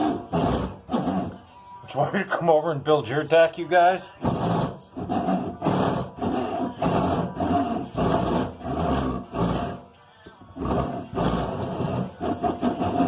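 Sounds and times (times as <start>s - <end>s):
hand saw cutting wood: 0.0s - 1.4s, 4.2s - 9.8s, 10.6s - 13.0s.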